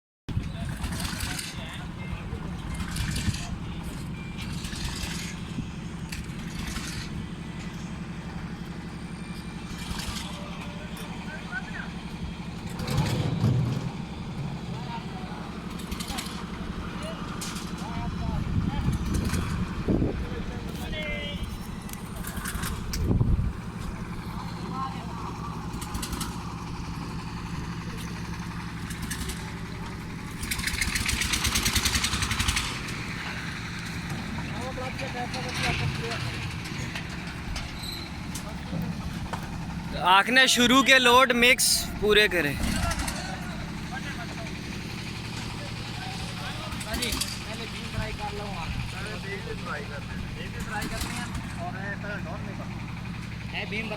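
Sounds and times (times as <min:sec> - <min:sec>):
concrete mixer engine running: 0:00.3 - 0:53.9.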